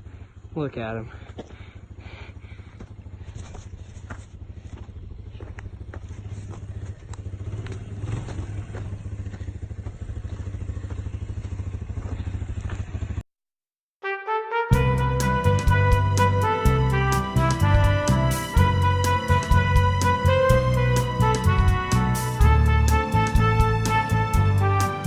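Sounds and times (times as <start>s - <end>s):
atv engine running: 0.0s - 13.2s, 14.8s - 25.0s
music: 14.0s - 25.0s.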